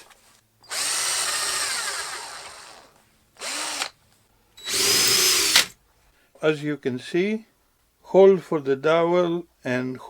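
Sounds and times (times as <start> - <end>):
power drill boring into wood: 0.7 - 3.9, 4.6 - 5.8.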